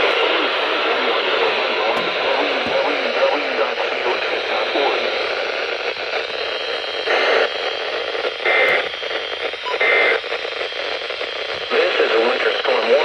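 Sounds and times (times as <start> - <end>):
radio static hiss: 0.0 - 13.0
digital data tone bursts: 9.6 - 10.2.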